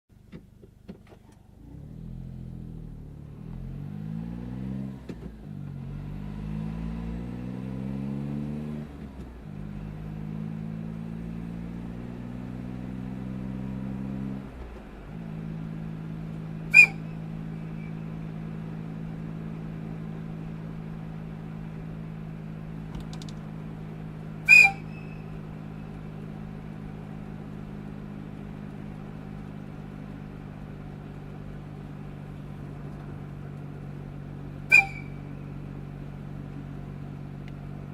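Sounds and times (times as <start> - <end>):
truck engine accelerating: 1.3 - 37.9
air whistle blasts: 16.7 - 17.2, 24.5 - 25.4, 34.7 - 35.3.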